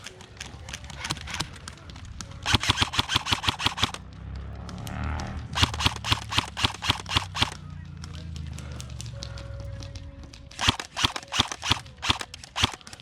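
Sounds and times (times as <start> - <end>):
airsoft gun bursts: 0.0 - 1.7, 2.4 - 4.0, 5.6 - 7.6, 10.5 - 13.0
airsoft gun single shots: 2.4 - 4.0, 5.6 - 7.6, 10.6 - 13.0.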